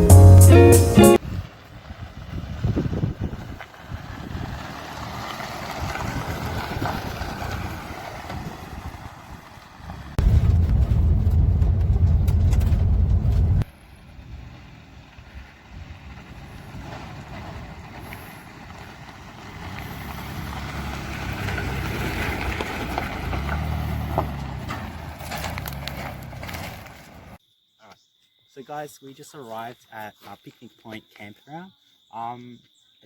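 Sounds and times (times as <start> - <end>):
vehicle engine and road rumble: 0.0 - 27.4
tyre noise: 2.4 - 27.4.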